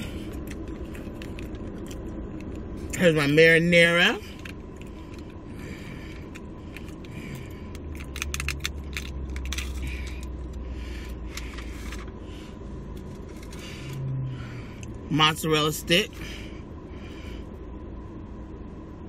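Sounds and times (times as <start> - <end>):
low steady rumble: 0.0 - 19.0.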